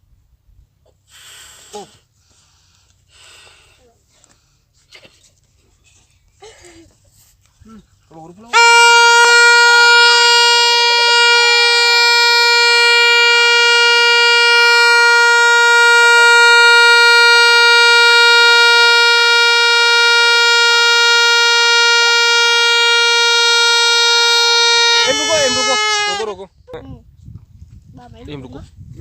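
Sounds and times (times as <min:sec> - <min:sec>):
air escaping from balloon: 0:01.1 - 0:02.1.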